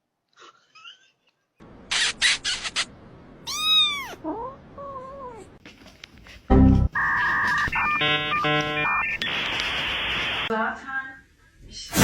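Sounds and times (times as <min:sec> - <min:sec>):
cat meowing: 0:03.5 - 0:04.2
cat yowling: 0:03.5 - 0:04.2.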